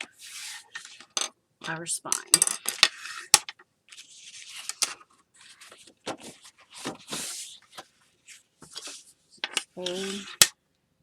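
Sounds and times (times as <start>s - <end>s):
bone folder scraping paper: 2.8s - 9.2s.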